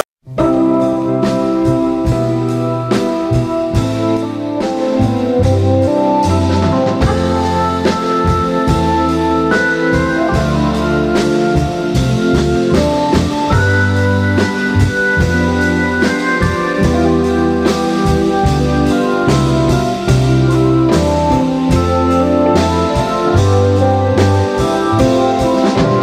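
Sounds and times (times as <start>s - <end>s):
drum kit beat: 0.0s - 26.0s
held bass: 0.0s - 26.0s
pitched notes: 0.0s - 26.0s.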